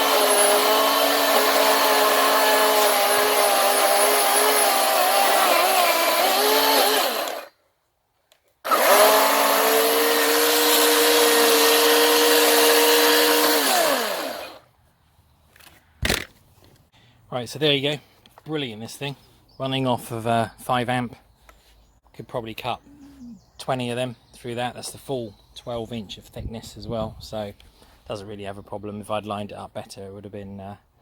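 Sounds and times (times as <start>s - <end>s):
battery chainsaw cutting log: 0.0s - 7.6s, 8.6s - 14.7s.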